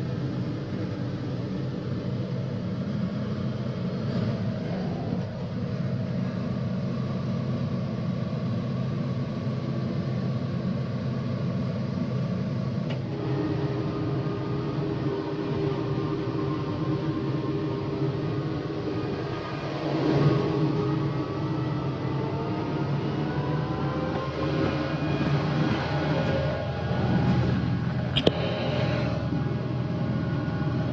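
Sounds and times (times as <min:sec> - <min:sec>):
higher steady hum: 0:12.6 - 0:30.9
tractor engine running: 0:24.0 - 0:30.9
short click: 0:28.2 - 0:28.4.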